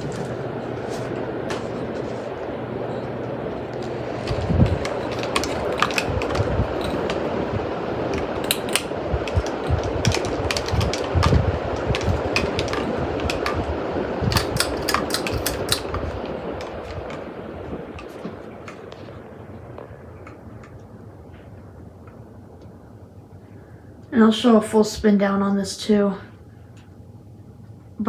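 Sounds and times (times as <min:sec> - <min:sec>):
ceiling fan air rush: 0:00.0 - 0:28.0
sharp clicks: 0:03.8 - 0:13.7, 0:14.3 - 0:17.2
wind thumps on microphone: 0:04.2 - 0:14.8.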